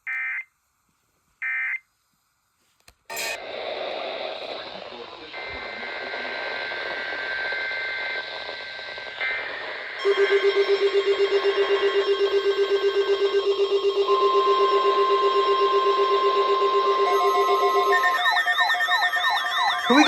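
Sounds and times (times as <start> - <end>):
radio hiss: 3.1 - 10.0
steady warning alarm tone: 5.3 - 20.0
rapid pulsing alarm beep: 5.5 - 20.0.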